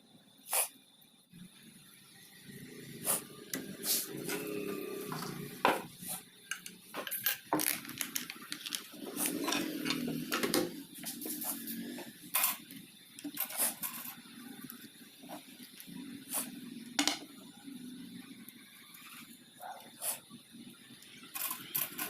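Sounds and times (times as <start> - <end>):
metallic clattering of small parts: 6.5 - 11.2, 12.3 - 14.3, 21.2 - 22.0
low rubbing or scraping: 8.8 - 12.1.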